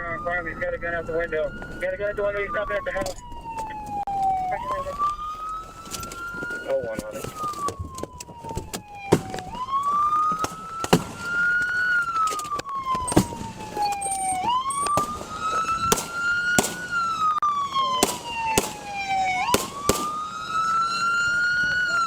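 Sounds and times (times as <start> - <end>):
police siren wailing: 0.0 - 22.0
sharp bangs: 8.7 - 20.4.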